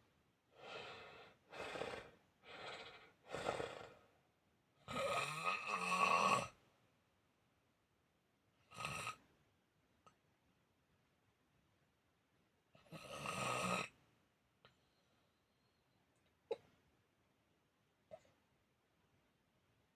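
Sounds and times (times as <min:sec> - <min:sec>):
pet snoring: 0:01.5 - 0:04.0, 0:04.9 - 0:06.6, 0:08.7 - 0:09.2, 0:12.8 - 0:13.9.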